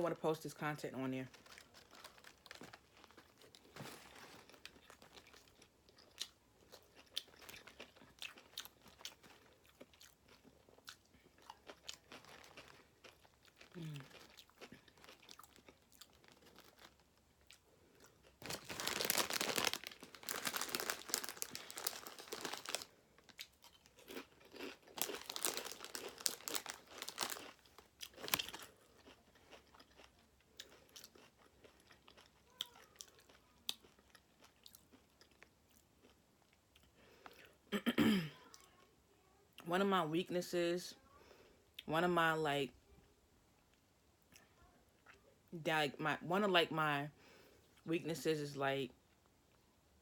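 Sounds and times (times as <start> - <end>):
person chewing crunchily: 1.3 - 37.6.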